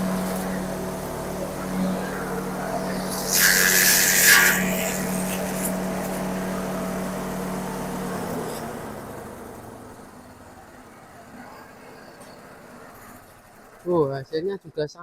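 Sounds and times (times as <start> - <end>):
grass chopper machine humming: 0.0 - 10.7.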